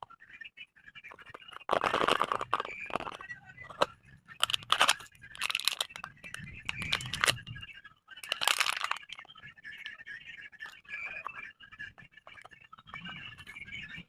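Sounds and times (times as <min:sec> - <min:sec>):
packaging crinkling and tearing: 0:01.6 - 0:03.2, 0:04.4 - 0:06.1, 0:06.7 - 0:07.4, 0:08.2 - 0:09.2.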